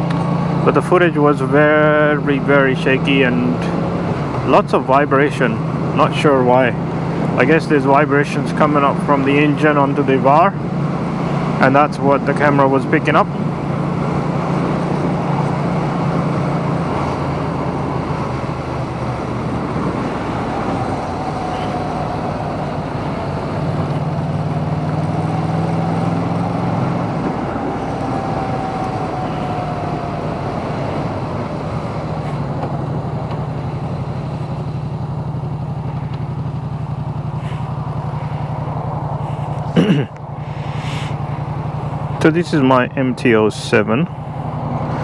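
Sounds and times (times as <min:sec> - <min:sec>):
motorcycle engine running: 0:00.0 - 0:45.0
wind rush: 0:13.4 - 0:33.9.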